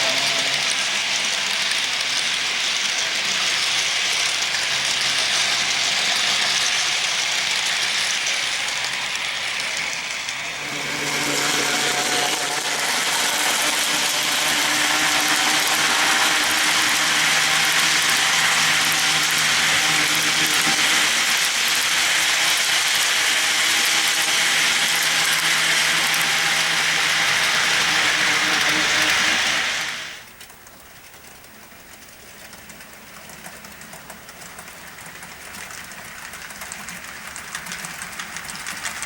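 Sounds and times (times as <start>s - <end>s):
wheels rumbling on rail: 0.0s - 30.4s
model train motor whir: 0.0s - 30.5s, 31.9s - 39.0s.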